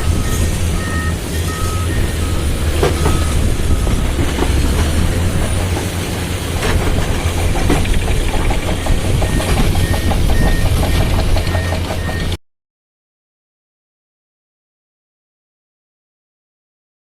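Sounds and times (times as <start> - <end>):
reversing alarm beeping: 0.0 - 4.8, 8.4 - 12.4
diesel engine under load: 0.0 - 12.4.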